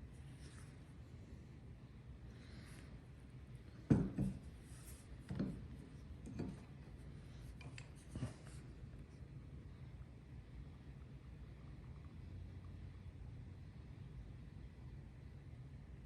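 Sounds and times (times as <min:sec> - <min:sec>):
low steady hum: 0:00.0 - 0:16.0
dull knocks and handling noises: 0:03.8 - 0:06.8.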